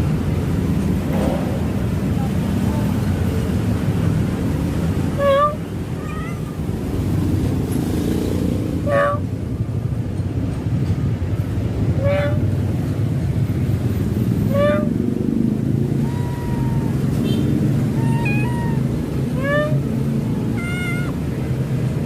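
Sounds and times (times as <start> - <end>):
kitten meowing: 5.2 - 6.8, 8.9 - 9.2, 12.0 - 12.4, 14.5 - 15.0, 15.9 - 17.2, 17.8 - 21.4.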